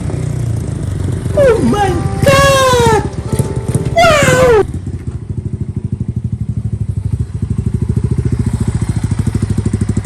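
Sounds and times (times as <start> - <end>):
motorcycle engine idling: 0.0 - 10.0
loud falling cry: 1.4 - 4.8.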